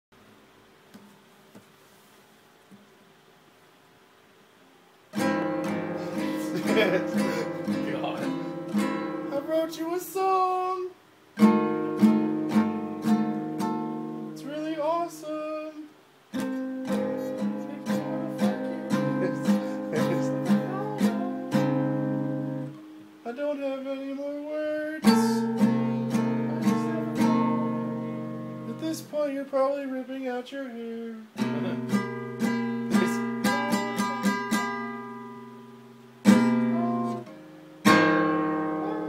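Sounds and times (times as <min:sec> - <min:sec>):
guitar strummed: 0:05.1 - 0:09.6, 0:11.4 - 0:14.9, 0:16.3 - 0:23.2, 0:25.0 - 0:29.3, 0:31.4 - 0:39.0.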